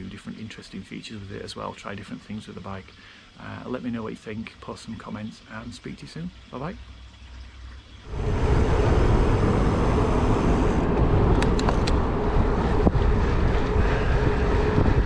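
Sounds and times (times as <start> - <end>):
faint hum: 8.1 - 15.0
wind rushing over microphone: 8.1 - 15.0.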